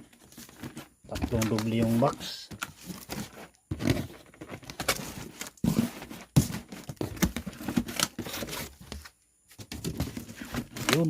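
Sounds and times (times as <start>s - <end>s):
cardboard box knocks and scrapes: 2.8s - 11.0s.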